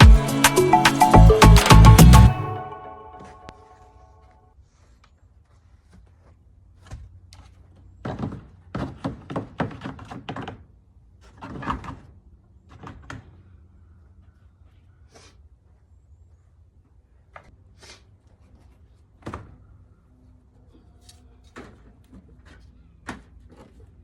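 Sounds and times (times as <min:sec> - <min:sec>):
knocks and clattering thuds: 0:08.0 - 0:10.7.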